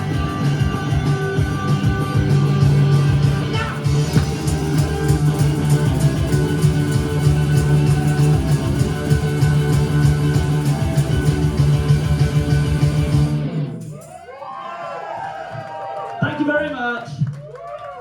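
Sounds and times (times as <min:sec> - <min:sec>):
live rock band playing: 0:00.0 - 0:13.8
crowd cheering: 0:13.6 - 0:18.0.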